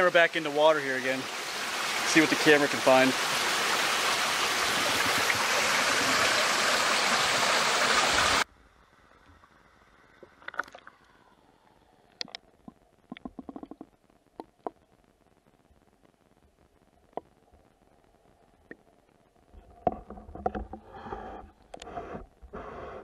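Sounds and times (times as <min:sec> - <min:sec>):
stream water rushing: 0:00.0 - 0:08.4
faint underwater clicks and knocks: 0:10.1 - 0:11.2, 0:12.1 - 0:14.9, 0:19.5 - 0:22.6.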